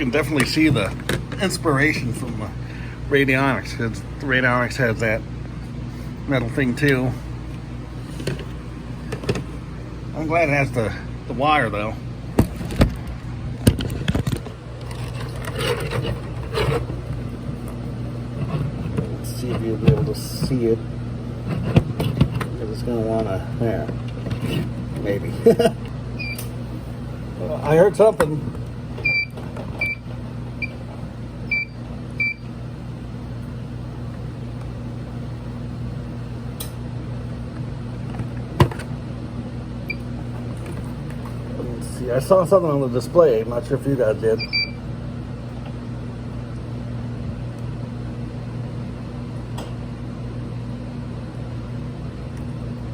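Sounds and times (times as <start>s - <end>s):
steady low hum: 0.0s - 52.9s
soft scraping and rubbing: 14.8s - 17.0s, 18.3s - 19.9s.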